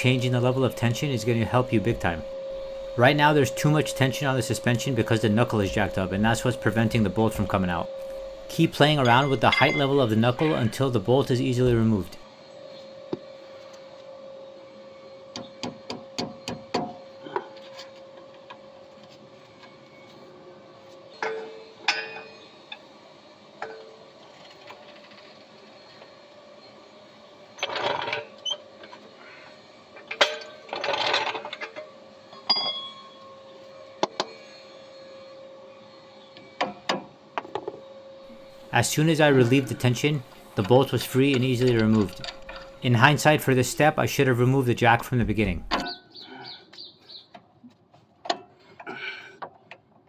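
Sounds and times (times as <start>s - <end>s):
faint hum: 0.0s - 12.3s, 38.2s - 45.9s
hand tools clicking and clinking: 5.6s - 12.2s, 38.3s - 45.9s.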